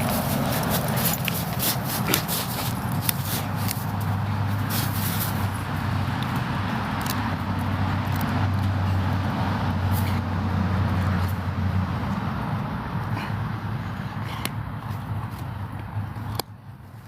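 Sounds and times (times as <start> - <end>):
street noise: 0.0 - 17.0
vehicle engine humming: 0.0 - 17.0.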